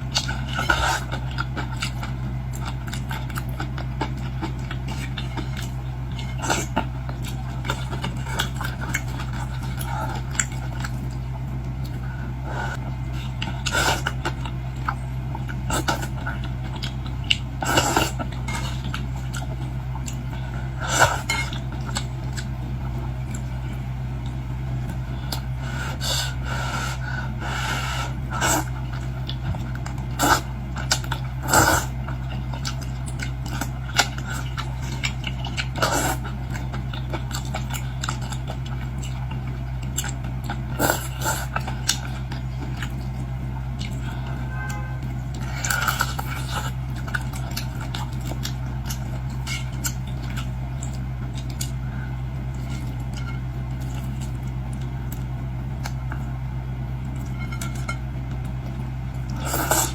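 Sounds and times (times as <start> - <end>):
eating noise: 0.0 - 56.4, 57.0 - 59.9
steady low hum: 0.0 - 59.9
utensils clinking against a bowl: 21.0 - 22.1, 43.8 - 50.5, 52.5 - 54.2, 57.2 - 58.1.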